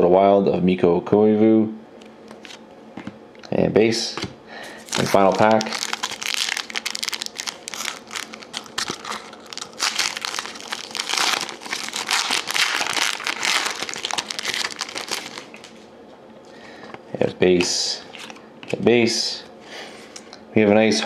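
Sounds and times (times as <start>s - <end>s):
wrapper crinkling: 4.8s - 15.8s.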